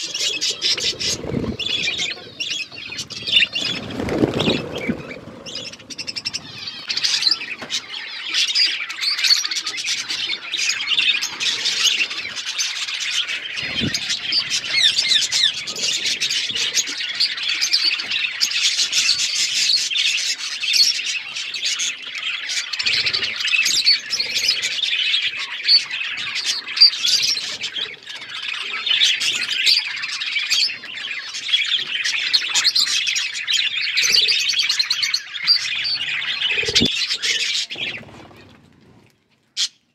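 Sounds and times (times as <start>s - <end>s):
budgerigars chirping: 0.0s - 38.1s.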